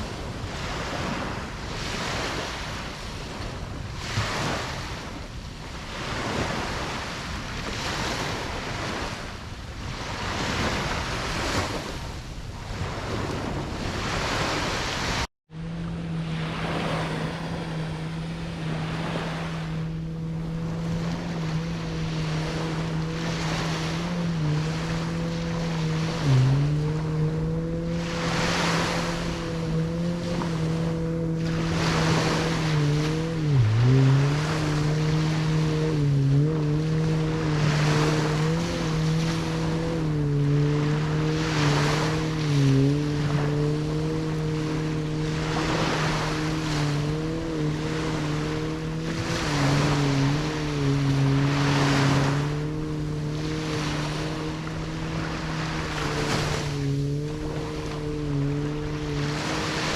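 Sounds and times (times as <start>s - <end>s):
ocean waves washing in: 0.0s - 59.9s
steady engine hum: 0.0s - 59.9s.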